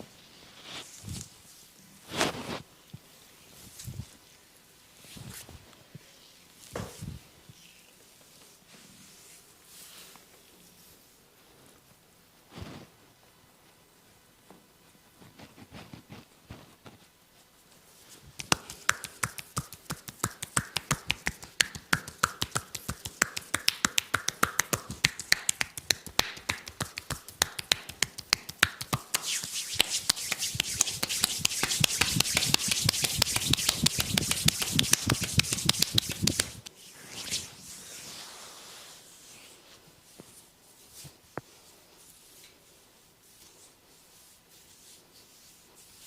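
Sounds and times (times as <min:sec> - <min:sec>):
hands slapping on skin: 0:18.4 - 0:36.7
rubbing hiss: 0:18.4 - 0:39.8.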